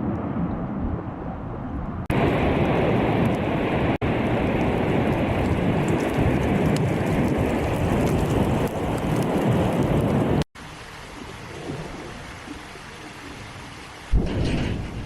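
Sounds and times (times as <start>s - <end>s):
volcanic eruption rumble: 0.0s - 10.5s.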